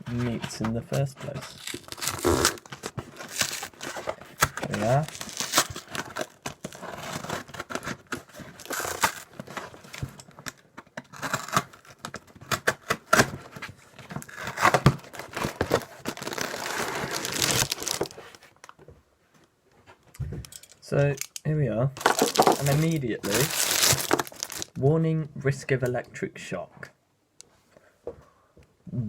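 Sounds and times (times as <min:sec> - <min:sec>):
cardboard box being torn open: 0:01.4 - 0:10.1, 0:11.0 - 0:13.6, 0:14.2 - 0:18.3, 0:22.0 - 0:24.7.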